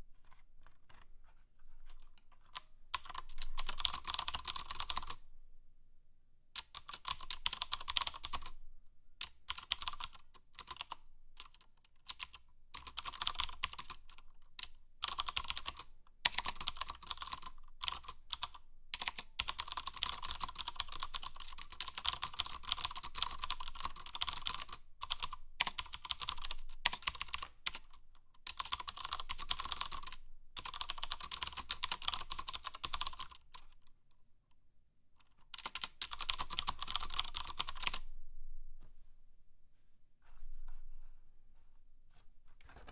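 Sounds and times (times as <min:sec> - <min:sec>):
mechanical keyboard typing: 0:02.5 - 0:05.2, 0:06.6 - 0:08.5, 0:09.2 - 0:33.8, 0:35.5 - 0:38.0.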